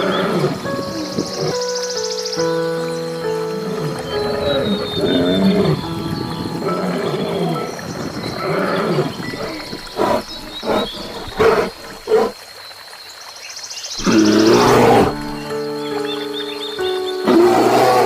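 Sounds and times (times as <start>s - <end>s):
lion grunts: 8.4s - 12.3s, 14.0s - 15.4s
lion roaring: 8.4s - 12.4s, 14.0s - 15.4s, 17.3s - 18.0s.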